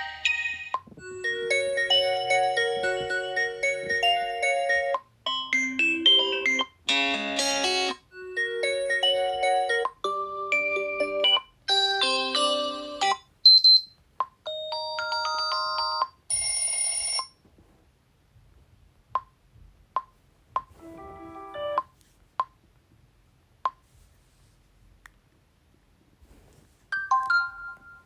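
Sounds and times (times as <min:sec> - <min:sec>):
held chord: 0:20.8 - 0:21.8.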